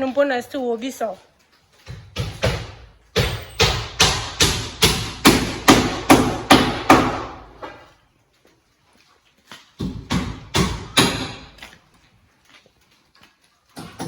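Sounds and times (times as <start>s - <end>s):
hammer driving nails into wood: 1.9s - 7.8s, 9.8s - 11.6s.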